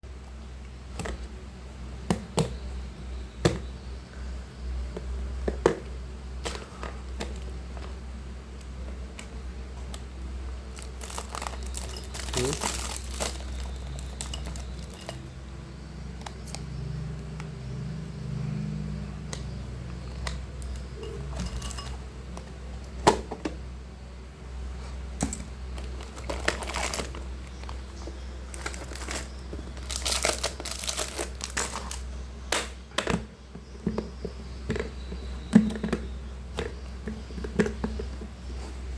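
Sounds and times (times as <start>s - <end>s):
plastic packaging crinkling: 10.7s - 15.2s, 25.8s - 27.8s, 28.5s - 32.1s.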